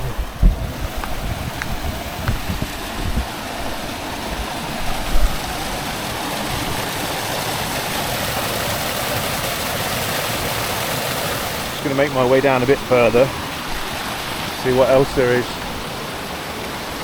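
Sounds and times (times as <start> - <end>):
wind buffeting on microphone: 0.0 - 6.9
waterfall cascading over rocks: 0.0 - 17.0.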